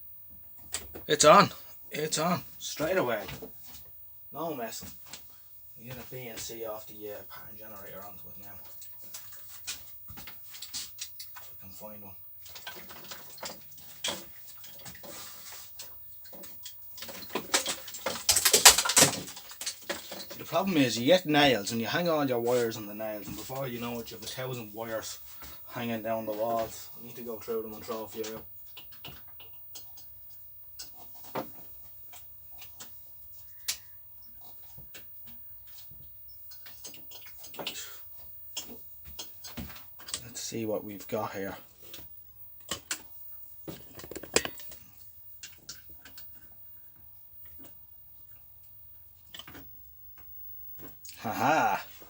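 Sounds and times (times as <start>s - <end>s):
cables rummaged clicking and rattling: 8.1s - 25.6s, 38.6s - 46.5s.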